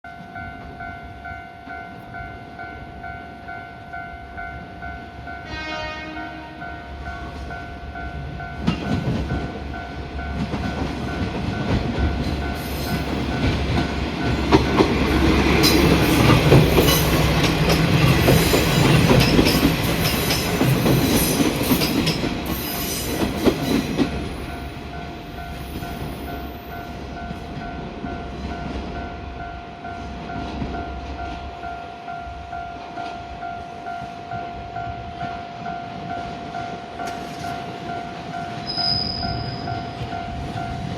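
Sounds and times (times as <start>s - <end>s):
train wheel and rail noise: 0.1s - 40.9s
train horn blast: 5.3s - 7.0s.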